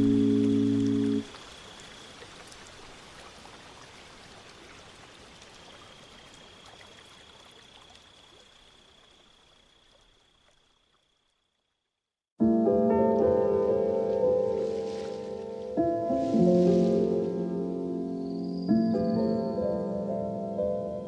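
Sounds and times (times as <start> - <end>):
running water: 0.0 - 11.3, 13.2 - 18.0.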